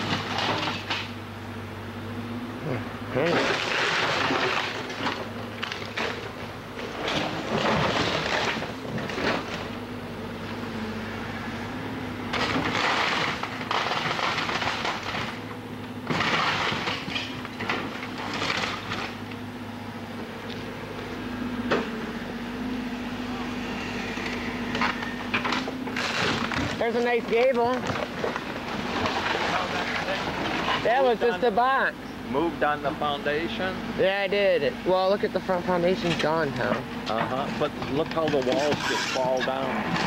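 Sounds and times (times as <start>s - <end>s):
steady low hum: 0.0s - 38.8s
timber splintering and crunching: 12.3s - 15.4s, 24.8s - 31.2s.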